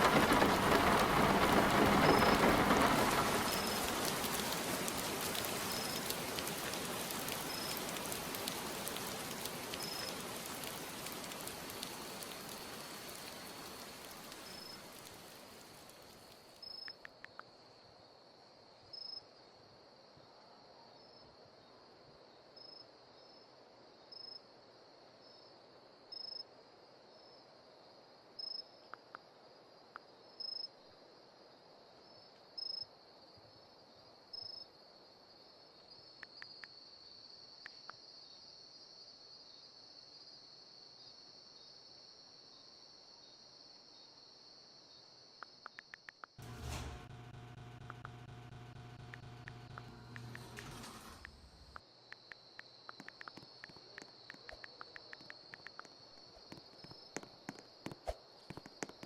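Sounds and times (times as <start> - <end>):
heavy rain falling: 0.0 - 16.6, 46.4 - 51.8
insect chirps: 0.0 - 20.3, 20.9 - 46.4, 51.3 - 59.0
insects trilling: 52.0 - 59.0.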